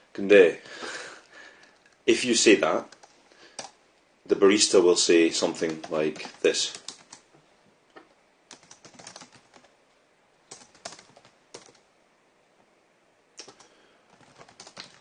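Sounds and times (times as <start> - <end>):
typing on computer keyboard: 2.9 - 3.8, 5.6 - 7.2, 8.5 - 9.7, 10.5 - 11.8, 13.4 - 15.0.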